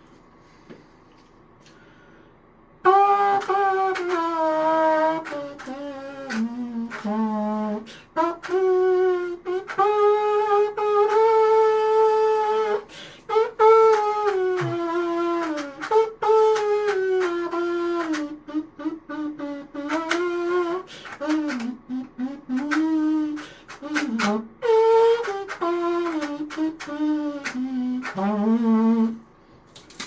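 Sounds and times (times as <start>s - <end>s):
trumpet playing slow melody: 2.8s - 29.2s.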